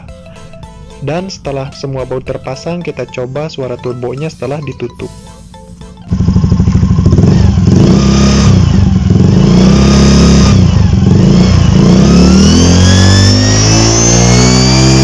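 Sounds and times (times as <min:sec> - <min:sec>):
scooter engine revving: 0:06.1 - 0:15.0
high whistling whine: 0:12.2 - 0:15.0.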